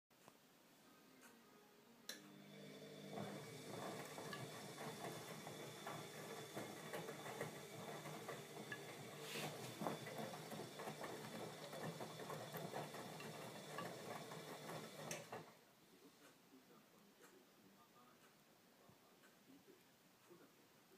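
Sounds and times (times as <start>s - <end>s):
washing machine motor hum: 2.1s - 15.6s.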